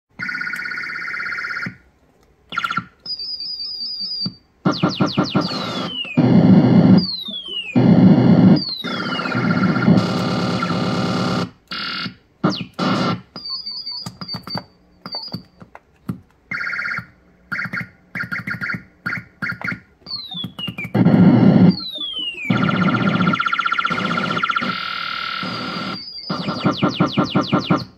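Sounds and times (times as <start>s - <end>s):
rapid pulsed high beeps: 3.2s - 15.4s, 18.4s - 27.9s
noisy buzzing bursts: 4.6s - 13.3s, 21.0s - 27.9s
falling laser-like zaps: 4.7s - 6.2s.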